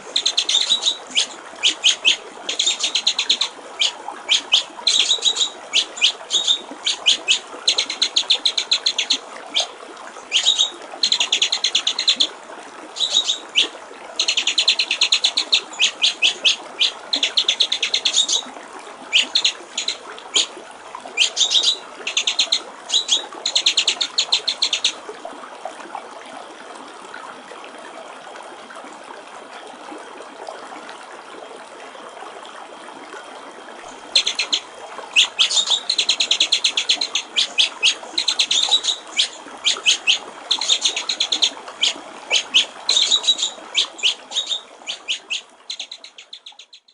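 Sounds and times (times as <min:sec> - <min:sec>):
water trickling: 0:00.0 - 0:46.9
bird singing high notes: 0:13.0 - 0:14.6.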